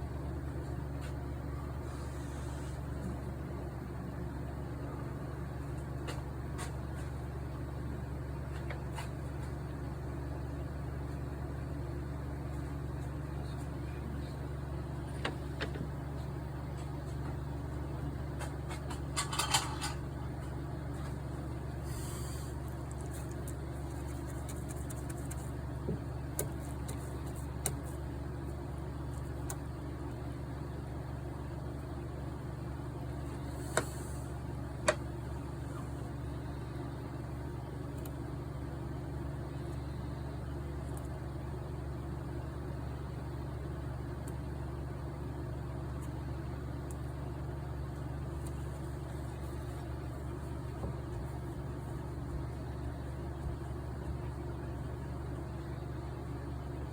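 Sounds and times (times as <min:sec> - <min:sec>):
low mechanical hum: 0:00.0 - 0:56.9
small clicks and taps: 0:22.7 - 0:28.0, 0:29.1 - 0:29.7.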